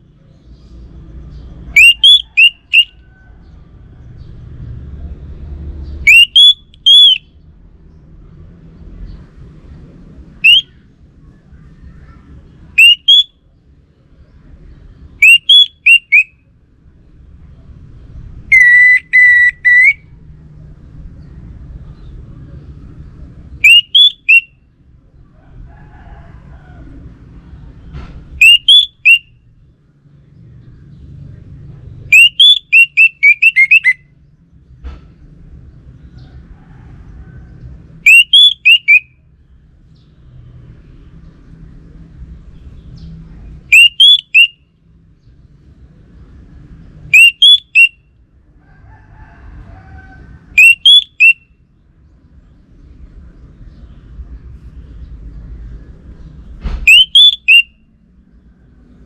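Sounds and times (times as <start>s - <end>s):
thrush singing whistled phrases: 1.8s - 3.0s, 6.0s - 7.3s, 10.4s - 10.8s, 12.8s - 13.4s, 15.2s - 16.4s, 18.5s - 20.2s, 23.6s - 24.6s, 28.4s - 29.3s, 32.1s - 34.1s, 38.0s - 39.2s, 43.7s - 44.6s, 47.1s - 48.1s, 50.6s - 51.6s, 56.8s - 57.8s.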